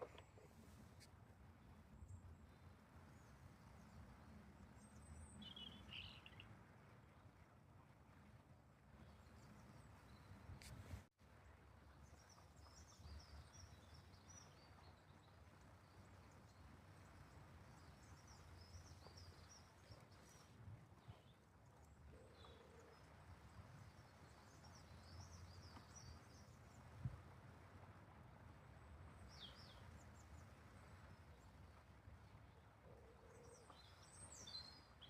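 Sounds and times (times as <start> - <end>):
small birds chirping: 2.0 - 6.5, 12.1 - 27.0, 29.1 - 35.0.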